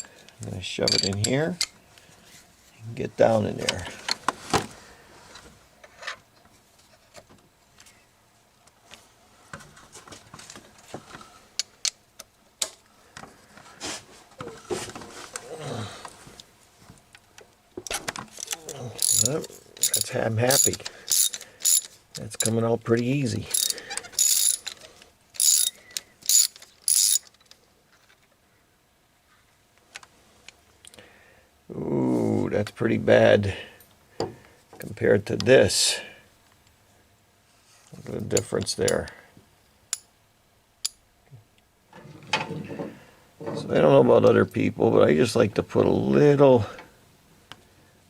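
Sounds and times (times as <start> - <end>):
ratchet wrench clicking: 18.4 - 22.5, 23.5 - 24.8, 25.4 - 27.4.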